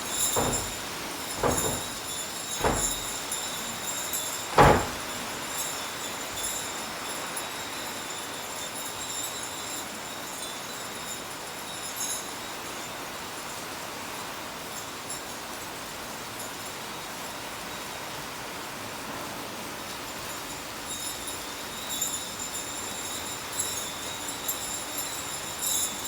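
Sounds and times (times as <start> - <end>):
steady rain falling: 0.0 - 26.0
sharp knock: 1.4 - 2.0.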